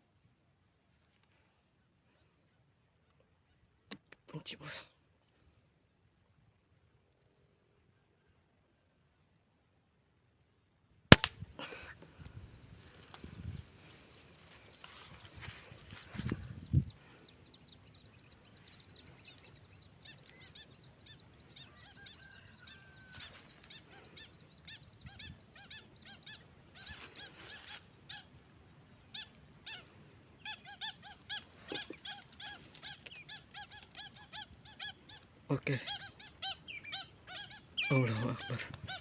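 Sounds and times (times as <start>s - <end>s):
birds chirping: 11.6s - 39.0s.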